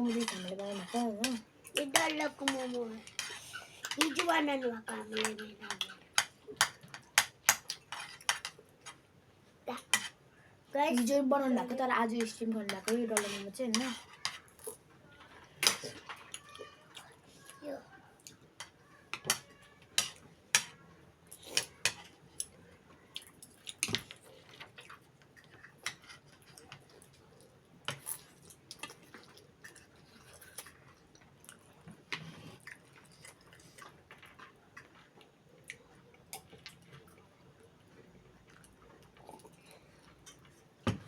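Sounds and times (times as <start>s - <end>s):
cutlery tapping a plate: 18.6s - 20.8s
chewing: 21.3s - 40.7s.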